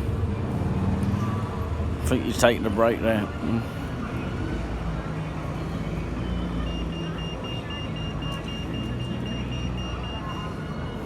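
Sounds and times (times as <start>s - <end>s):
street traffic: 0.0s - 11.0s
rapid high electronic beeps: 6.2s - 11.0s.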